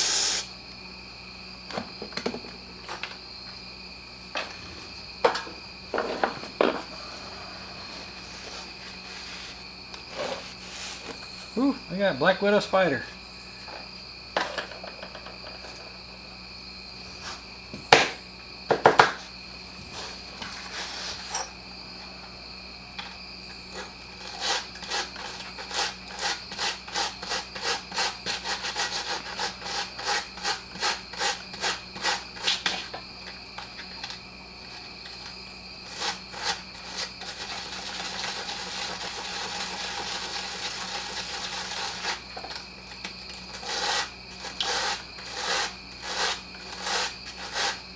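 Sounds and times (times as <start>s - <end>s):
hand scraping small part: 43.3s - 47.8s.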